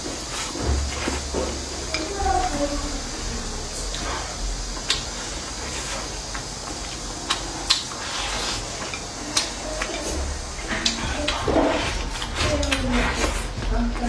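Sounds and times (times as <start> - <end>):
steady hiss: 0.0 - 14.0
utensils clinking on dishes: 0.0 - 14.0.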